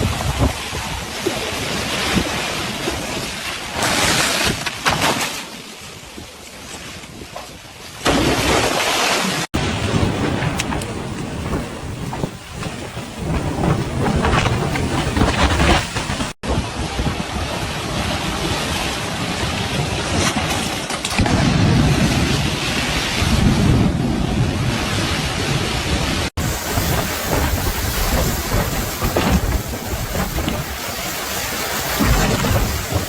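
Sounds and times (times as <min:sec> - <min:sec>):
heavy rain downpour: 0:00.0 - 0:04.7, 0:09.4 - 0:33.0
low thunder rumbling: 0:09.6 - 0:20.2, 0:21.2 - 0:33.0.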